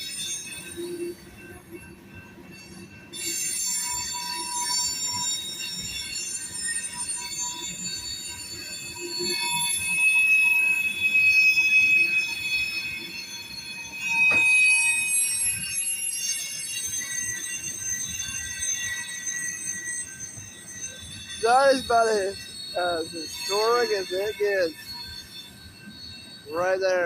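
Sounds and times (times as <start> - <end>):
train wheels squealing: 0.0 - 27.0
low rumble of freight cars: 20.0 - 27.0.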